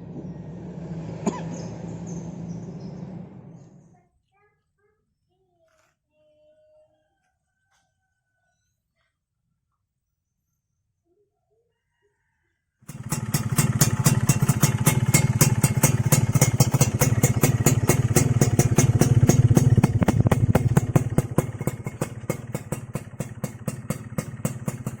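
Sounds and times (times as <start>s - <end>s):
motorcycle engine idling: 0.0s - 3.9s, 12.9s - 25.0s.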